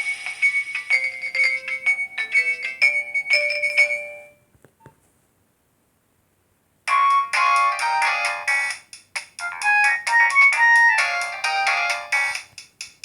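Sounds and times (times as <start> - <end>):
mobile phone ringtone: 0.0 - 4.4.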